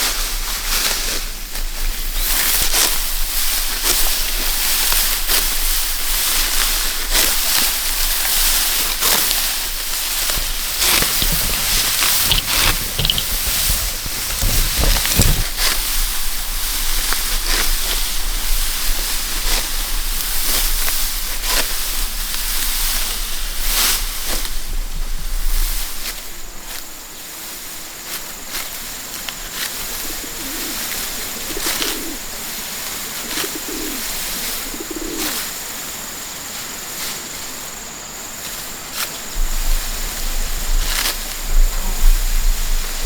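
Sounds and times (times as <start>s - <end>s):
outdoor hiss: 0.0s - 43.0s
scattered clicks: 10.2s - 15.5s.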